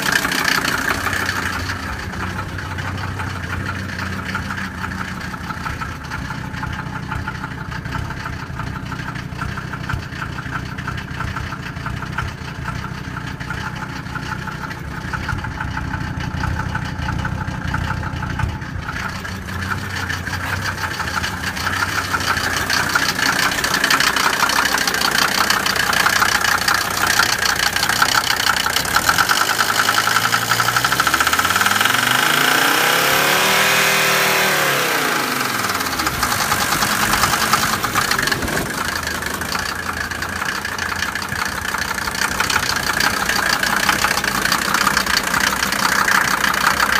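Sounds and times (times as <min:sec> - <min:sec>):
diesel engine knocking: 0:00.0 - 0:46.9.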